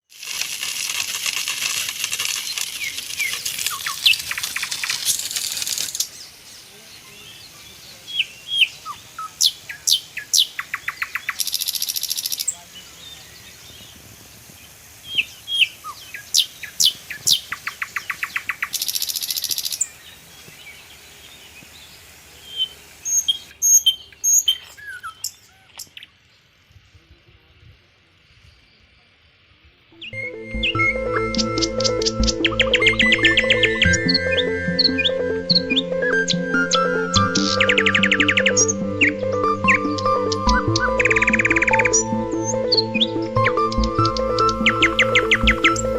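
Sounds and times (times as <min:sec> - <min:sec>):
buzzy bird trills: 0:02.2 - 0:06.2, 0:30.0 - 0:45.9
birds chirping and whistling: 0:02.3 - 0:14.0, 0:15.0 - 0:21.8, 0:22.4 - 0:26.1, 0:30.0 - 0:45.9.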